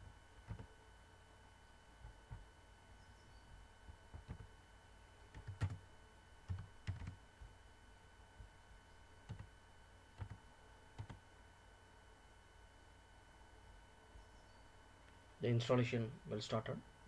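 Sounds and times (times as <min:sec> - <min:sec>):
faint electrical hum: 0:00.0 - 0:17.0
computer mouse clicks: 0:04.1 - 0:04.5.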